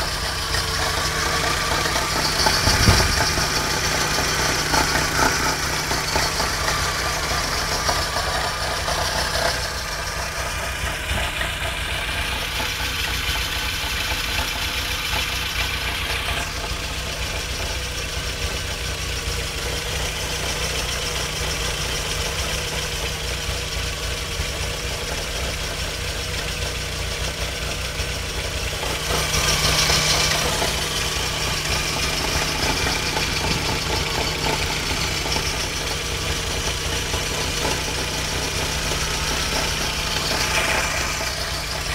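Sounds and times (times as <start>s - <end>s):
vehicle engine idling: 0.0s - 41.9s.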